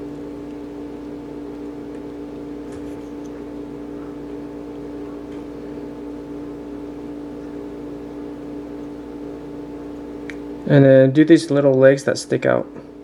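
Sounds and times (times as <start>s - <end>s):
machine hum: 0.0s - 13.0s.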